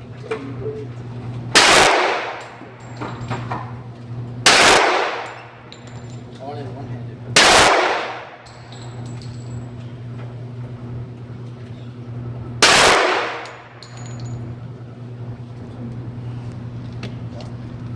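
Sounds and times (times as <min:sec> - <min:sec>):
steady low hum: 0:00.0 - 0:17.9
gunshots ringing out: 0:01.6 - 0:02.6, 0:04.4 - 0:05.5, 0:07.4 - 0:08.4, 0:12.6 - 0:13.8.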